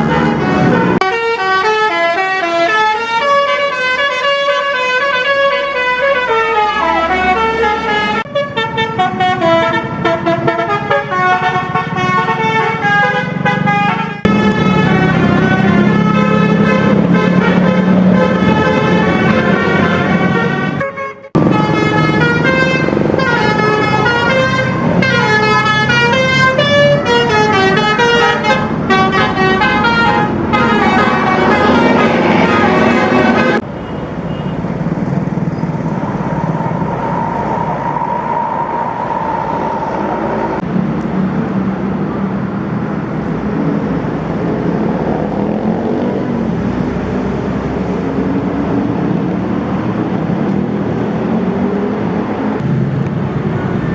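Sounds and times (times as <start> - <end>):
musical air horn: 0.0 - 33.6
vehicle engine and road noise: 0.0 - 53.9.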